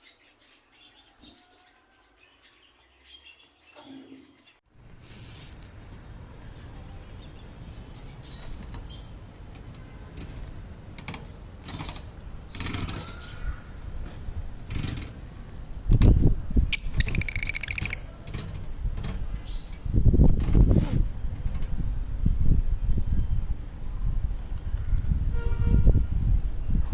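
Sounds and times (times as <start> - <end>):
lovebirds chirping: 0.0 - 9.3, 16.7 - 18.2.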